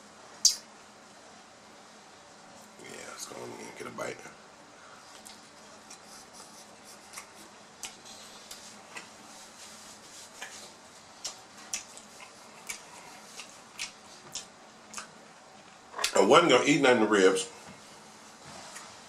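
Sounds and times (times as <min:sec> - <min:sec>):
chewing and lip smacking: 0:05.1 - 0:06.0, 0:07.0 - 0:09.1, 0:11.2 - 0:16.2.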